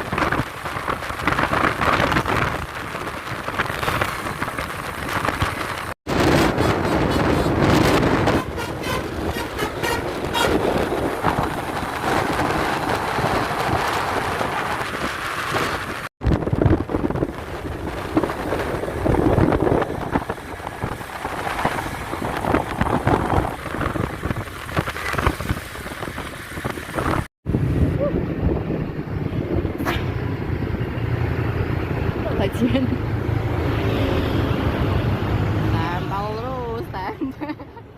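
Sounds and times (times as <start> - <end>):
wind buffeting microphone: 0.0 - 36.9
bus passing: 0.0 - 37.9
multi-tone bus horn: 6.5 - 10.8, 29.8 - 30.2.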